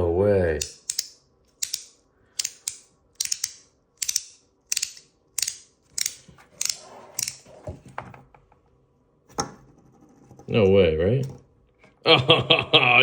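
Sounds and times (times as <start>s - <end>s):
metal fidget coin clicking: 0.6s - 7.4s.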